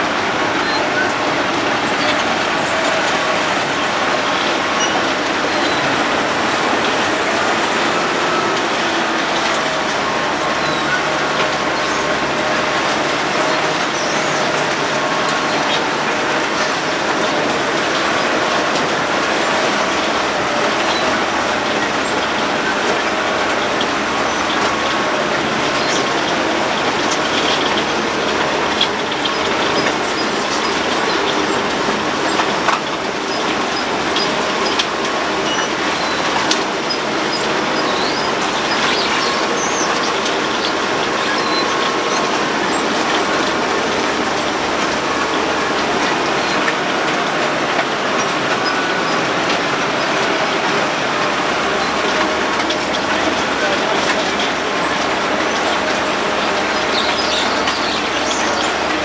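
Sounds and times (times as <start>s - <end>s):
milling machine grinding road: 0.0s - 59.0s.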